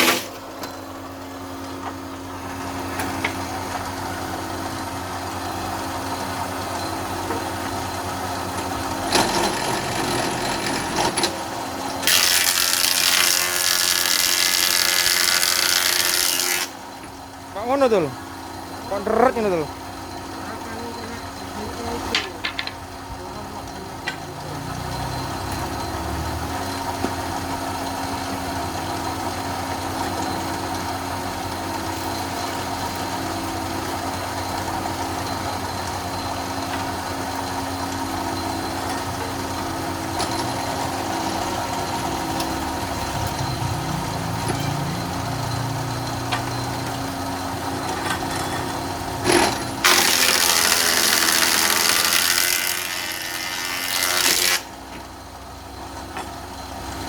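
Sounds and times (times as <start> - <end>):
board rasping through cutter: 0.0 - 0.4, 12.0 - 16.8, 49.2 - 54.7
electric wood planer humming: 11.9 - 16.9, 49.8 - 54.7.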